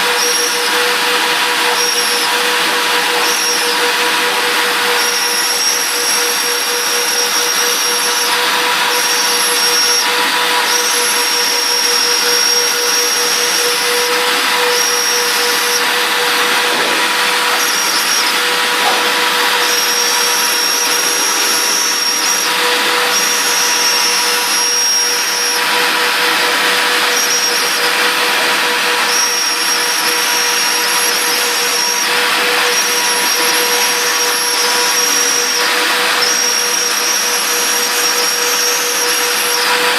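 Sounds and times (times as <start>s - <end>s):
higher whine switching on and off: 0.0s - 39.9s
router spindle whine and cutting hiss: 0.0s - 39.9s.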